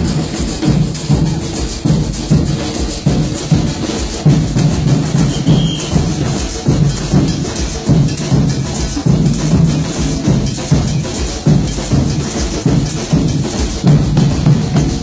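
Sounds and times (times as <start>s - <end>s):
shaker rattling: 0.0s - 14.3s.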